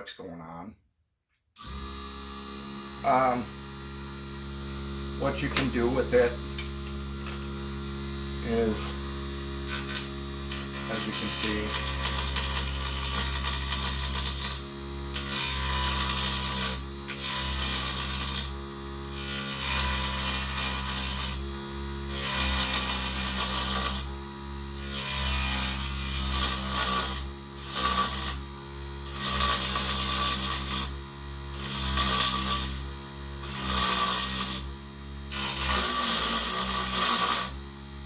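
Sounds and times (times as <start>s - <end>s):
lathe motor hum: 1.6s - 34.5s
turning tool scraping wood: 5.1s - 7.6s, 8.4s - 21.4s, 24.8s - 34.6s, 35.3s - 37.6s.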